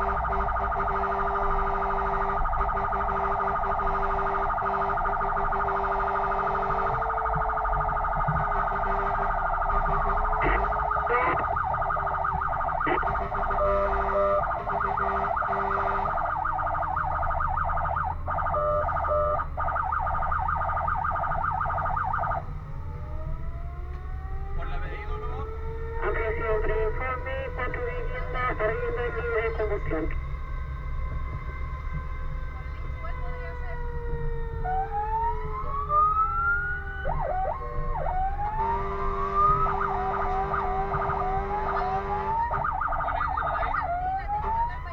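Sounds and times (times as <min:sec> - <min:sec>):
engine rumbling: 0:00.0 - 0:44.9
fire engine siren wailing: 0:00.0 - 0:44.9
short horn blasts: 0:08.6 - 0:10.6, 0:13.0 - 0:16.2, 0:38.6 - 0:42.5.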